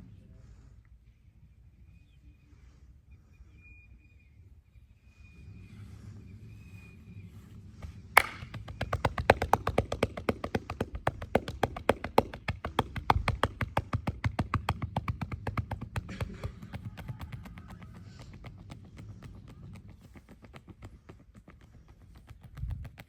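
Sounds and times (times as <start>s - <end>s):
hands striking a body: 8.2s - 17.6s.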